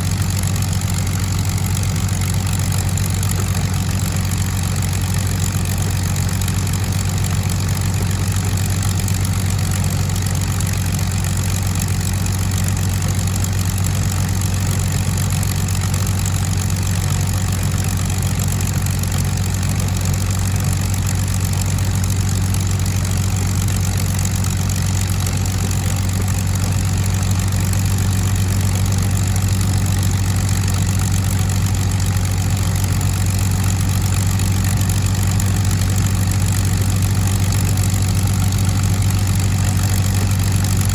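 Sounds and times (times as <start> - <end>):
aircraft engines idling: 0.0 - 40.9.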